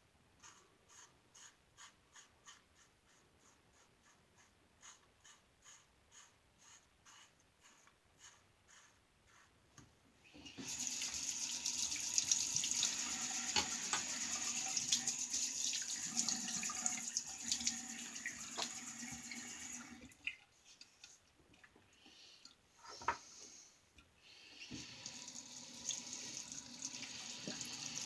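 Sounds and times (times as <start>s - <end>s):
tap water running into sink: 10.5s - 20.4s, 24.7s - 28.0s.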